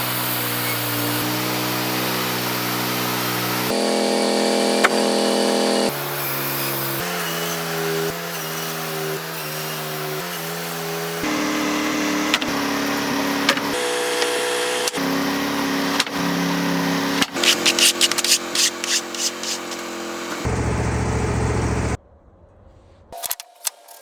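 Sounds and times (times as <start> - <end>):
sawmill machine drone: 0.0 - 22.0
band blade cutting log: 1.4 - 20.5.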